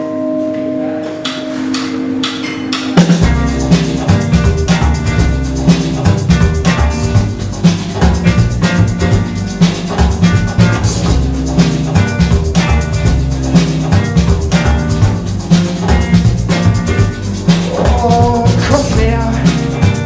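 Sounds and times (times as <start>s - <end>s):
instrumental pop-rock music: 0.0s - 20.0s.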